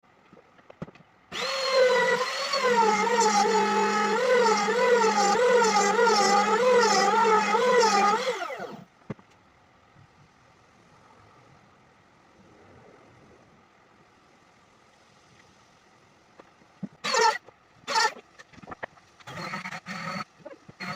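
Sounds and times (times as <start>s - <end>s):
electric power tool cutting: 1.3s - 8.8s, 19.3s - 20.9s.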